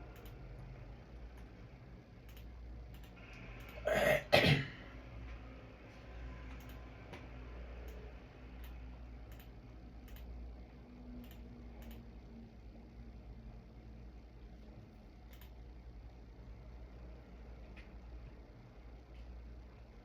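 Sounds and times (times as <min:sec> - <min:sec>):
low room hum: 0:00.0 - 0:20.0
person coughing: 0:03.8 - 0:04.8.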